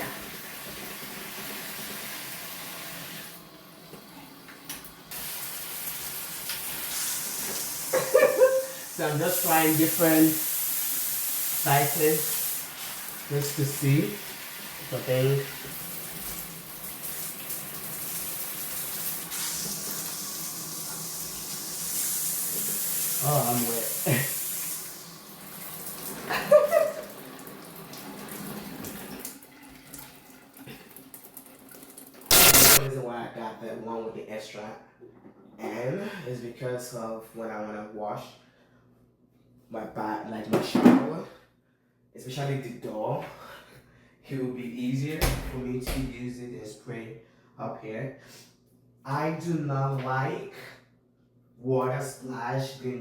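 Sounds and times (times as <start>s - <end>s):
water spraying from shower head: 5.1s - 15.4s, 16.1s - 25.0s.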